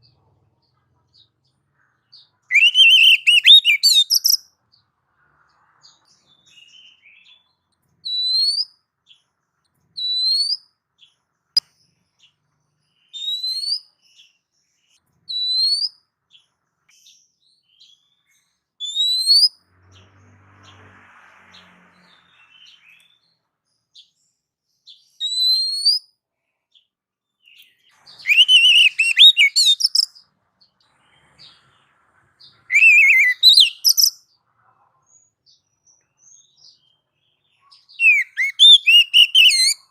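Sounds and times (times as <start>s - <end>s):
bird whistling song: 2.1s - 4.5s, 6.3s - 8.8s, 10.0s - 10.7s, 12.9s - 14.3s, 15.3s - 16.0s, 18.8s - 19.7s, 22.1s - 23.4s, 24.9s - 26.1s, 27.4s - 30.2s, 32.6s - 34.2s, 37.9s - 39.9s.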